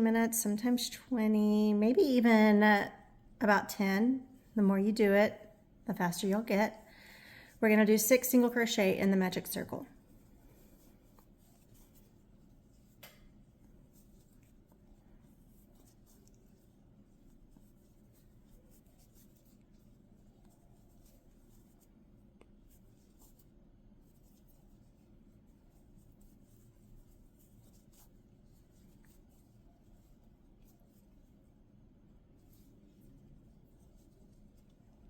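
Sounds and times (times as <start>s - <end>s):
low room hum: 0.0s - 35.0s
crochet hook pulling yarn: 10.8s - 25.0s, 25.6s - 31.4s.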